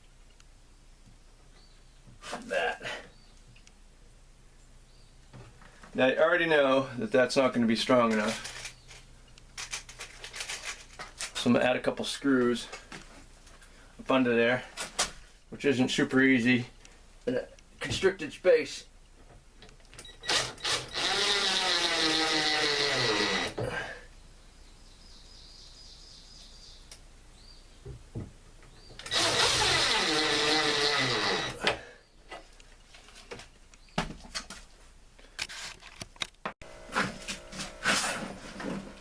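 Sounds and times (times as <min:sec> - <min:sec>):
power drill driving screws: 0:20.2 - 0:23.6, 0:29.0 - 0:31.7.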